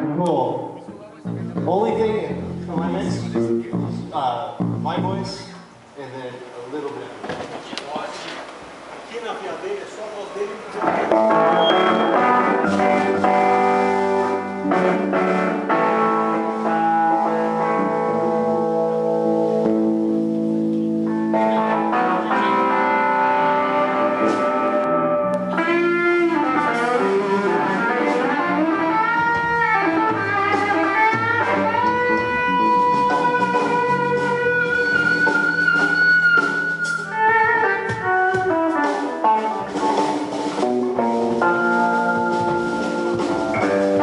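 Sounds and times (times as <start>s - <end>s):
electric guitar through amplifier: 0.0s - 9.0s, 10.5s - 44.0s.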